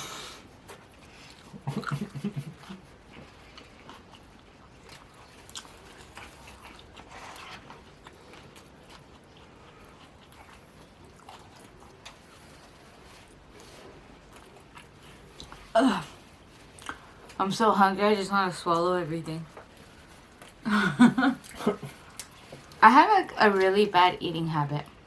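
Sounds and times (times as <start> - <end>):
person chewing: 0.5 - 17.4, 19.5 - 20.6, 21.3 - 22.8.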